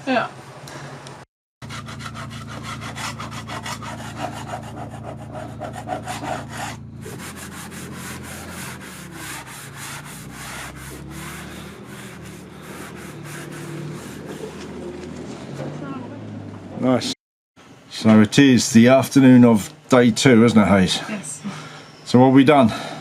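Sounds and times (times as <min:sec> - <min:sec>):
steady low hum: 0:00.4 - 0:14.8
hand sanding strokes: 0:01.6 - 0:14.9.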